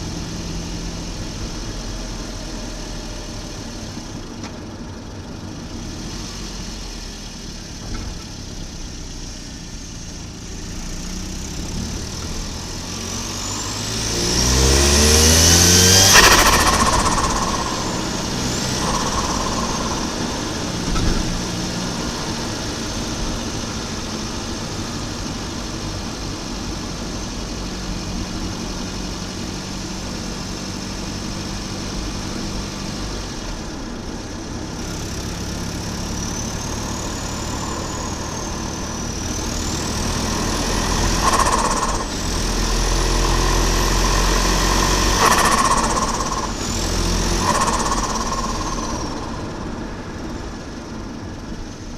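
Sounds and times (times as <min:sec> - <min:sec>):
turbocharged car engine running: 0:00.0 - 0:51.9
compressor surge flutter: 0:12.4 - 0:23.6, 0:36.0 - 0:51.4
turbo whistle: 0:13.1 - 0:22.6, 0:36.2 - 0:50.0.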